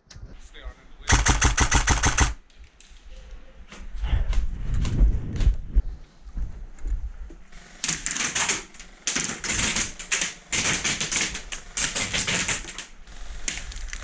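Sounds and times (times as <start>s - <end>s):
airsoft guns firing bursts: 1.1s - 2.4s, 7.5s - 13.7s.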